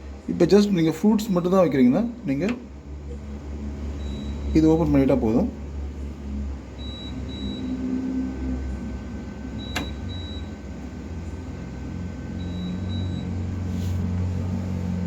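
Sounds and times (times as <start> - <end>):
refrigerator alarm double beep: 4.0 - 4.7, 6.8 - 7.9, 9.5 - 10.6, 12.3 - 13.4.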